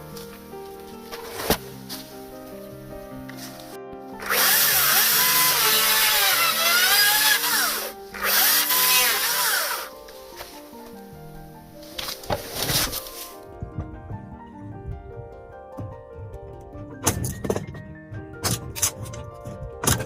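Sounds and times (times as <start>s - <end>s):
background music: 0.0s - 20.0s
power tool motor: 4.2s - 9.9s.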